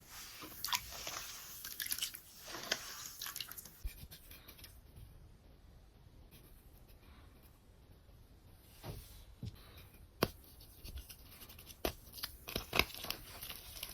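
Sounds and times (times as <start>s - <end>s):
chalk crumbling: 0.0s - 4.2s, 10.3s - 13.9s.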